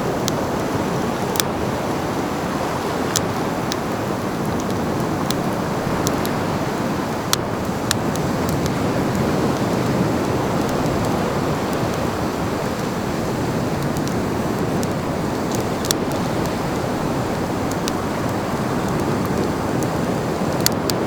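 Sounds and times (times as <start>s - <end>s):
ocean surf breaking: 0.0s - 21.0s
sharp ticks: 4.4s - 6.4s, 7.3s - 12.9s, 13.8s - 21.0s.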